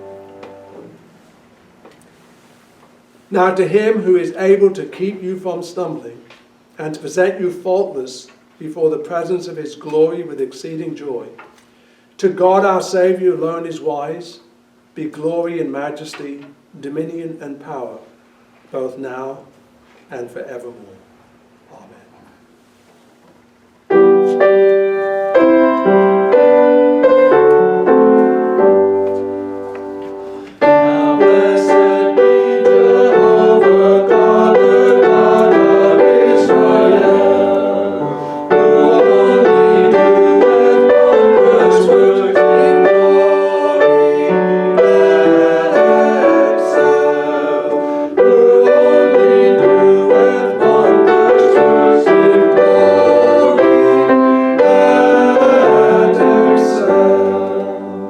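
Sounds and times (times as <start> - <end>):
congregation singing a hymn: 0.0 - 0.9, 3.3 - 6.1, 23.9 - 58.0
piano playing: 0.0 - 1.0, 23.9 - 58.0.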